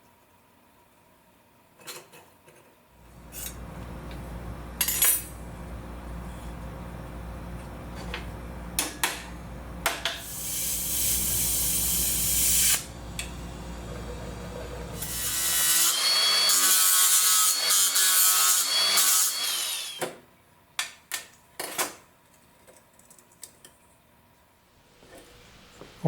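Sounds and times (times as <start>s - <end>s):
steady low hum: 3.0s - 11.4s, 12.0s - 15.0s.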